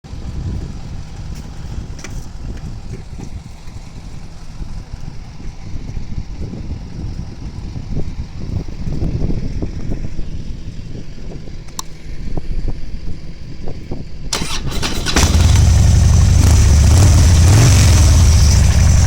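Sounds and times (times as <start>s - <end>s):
motorcycle engine idling: 0.1s - 10.9s, 14.3s - 19.0s.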